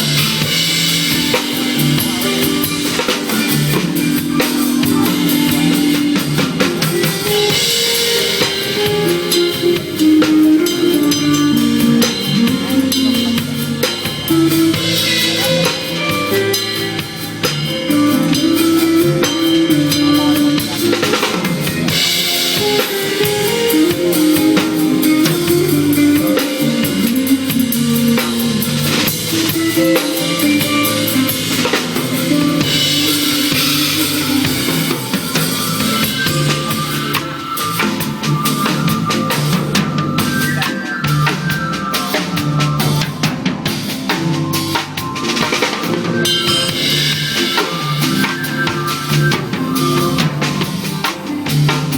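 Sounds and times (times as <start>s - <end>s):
backing track with melody and bass: 0.0s - 51.9s
drum kit playing: 0.0s - 51.9s.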